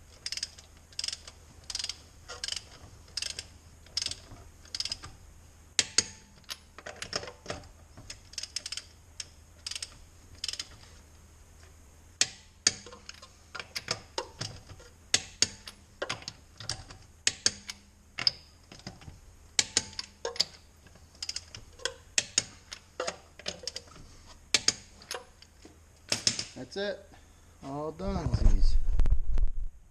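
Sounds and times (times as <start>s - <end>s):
hand ratchet clicking: 0.2s - 5.1s, 8.1s - 10.7s, 21.2s - 23.9s.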